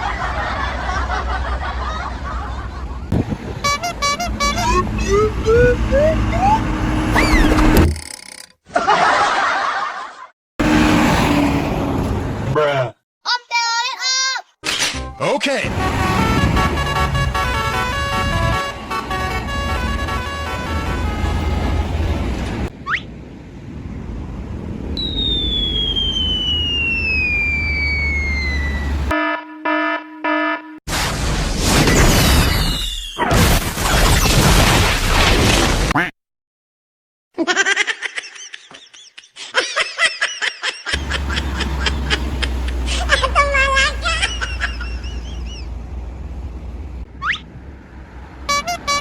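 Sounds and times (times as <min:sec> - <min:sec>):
low engine rumble: 0:00.0 - 0:07.8, 0:15.7 - 0:29.1, 0:41.0 - 0:49.0
rising horn notes: 0:03.5 - 0:07.8, 0:15.7 - 0:21.9
pulsing electronic alarm beep: 0:25.0 - 0:28.9
long falling whistle: 0:25.0 - 0:29.0.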